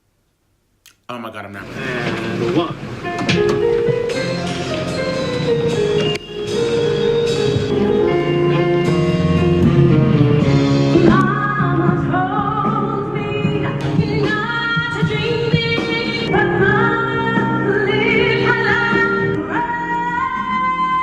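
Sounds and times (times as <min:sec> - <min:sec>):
instrumental accompaniment: 0:02.5 - 0:21.0
woman singing soulful song: 0:11.0 - 0:21.0.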